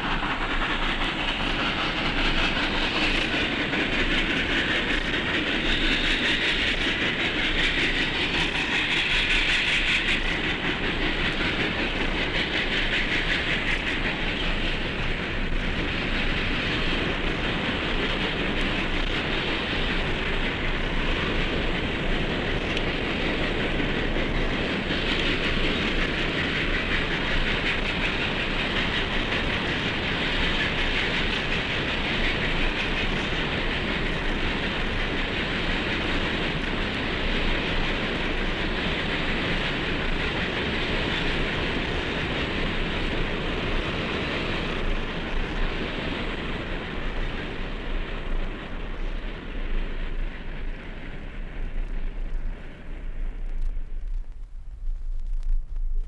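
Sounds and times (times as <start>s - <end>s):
train wheels clattering: 0.0s - 56.0s.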